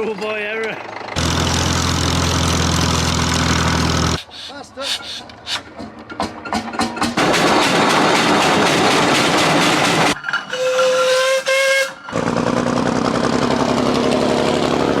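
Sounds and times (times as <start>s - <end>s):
tractor engine running hard: 0.8s - 4.2s, 7.0s - 10.2s, 12.1s - 15.0s
whistle blasts: 10.5s - 12.1s.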